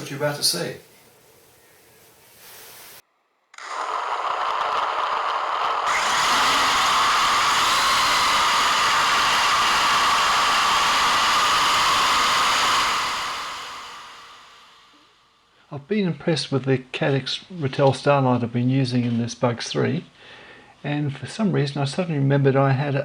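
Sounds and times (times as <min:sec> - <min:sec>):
drone motors whining: 0:03.6 - 0:15.0.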